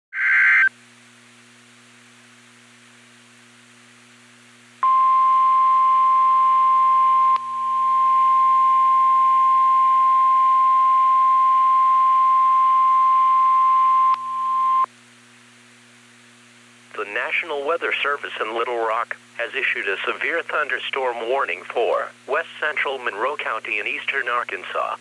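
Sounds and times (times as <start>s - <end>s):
faint steady hum: 0.4s - 25.0s
steady warning beep: 4.8s - 14.9s.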